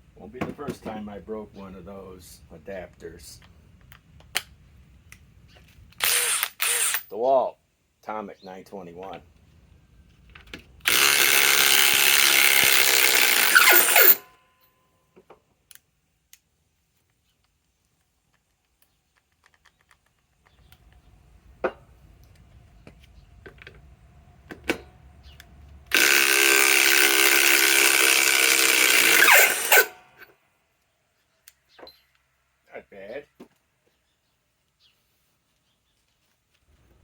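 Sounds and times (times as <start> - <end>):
impact wrench hammering: 10.9 - 14.2, 25.9 - 30.2.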